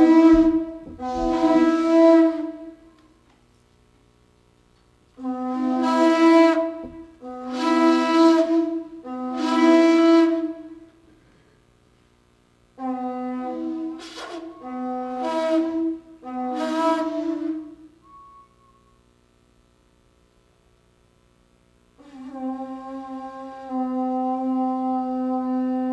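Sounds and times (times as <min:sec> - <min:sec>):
horn blasts: 0:00.0 - 0:03.3, 0:05.1 - 0:11.6, 0:12.7 - 0:19.2, 0:22.0 - 0:25.9.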